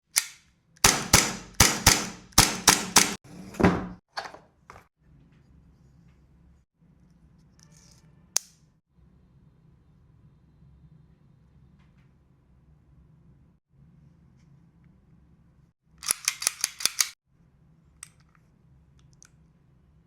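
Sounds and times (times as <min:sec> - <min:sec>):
airsoft pistol shots: 0:00.8 - 0:03.2
sharp click: 0:16.0 - 0:17.2.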